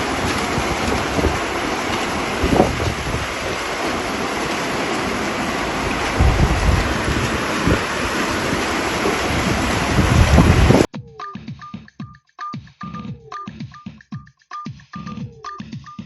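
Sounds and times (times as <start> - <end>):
deep thunder rumbles: 0.0 - 10.9
heavy rain pouring: 0.0 - 10.9.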